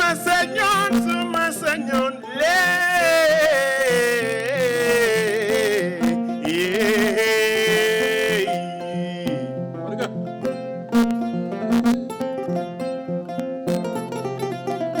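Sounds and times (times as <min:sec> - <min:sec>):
person singing: 0:00.0 - 0:10.6
plucked string accompaniment: 0:00.0 - 0:15.0.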